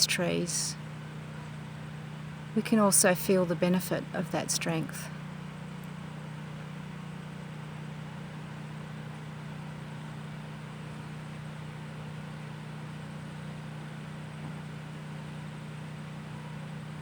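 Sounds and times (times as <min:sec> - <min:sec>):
distant machinery humming: 0:00.0 - 0:05.7.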